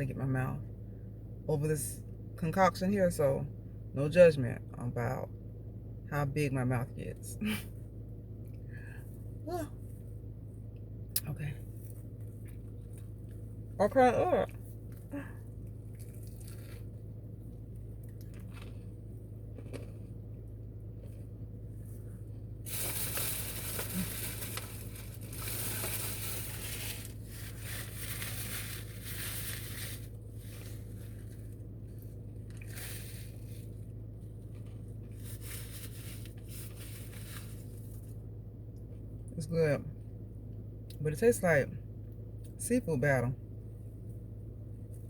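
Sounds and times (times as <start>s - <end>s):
steady low hum: 0.0s - 45.0s
crunchy chewing: 15.7s - 17.1s, 17.7s - 20.2s.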